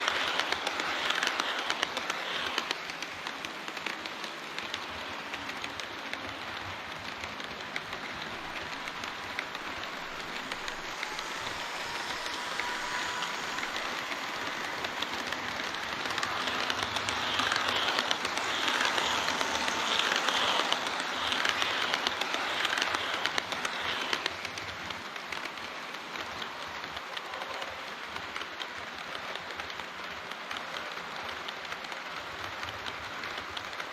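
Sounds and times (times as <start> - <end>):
model train wheels clattering: 0.0 - 33.9.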